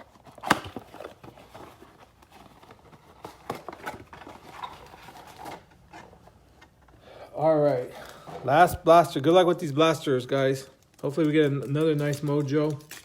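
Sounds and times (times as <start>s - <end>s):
packaging rustling: 0.0s - 6.4s.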